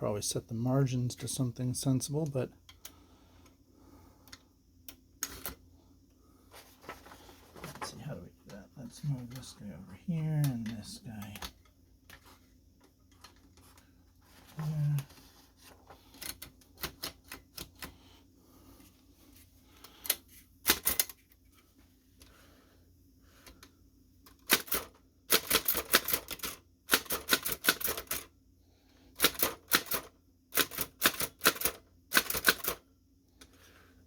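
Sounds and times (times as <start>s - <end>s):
typewriter keys clicking: 24.5s - 28.3s, 29.2s - 32.8s.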